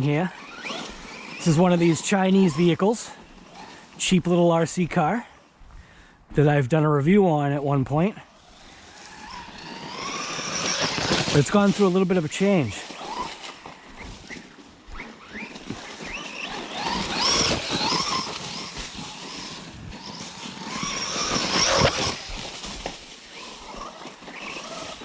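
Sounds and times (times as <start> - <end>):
rc car electric motor whining: 0.0 - 4.1, 8.2 - 25.0
tyres on gravel: 0.0 - 25.0.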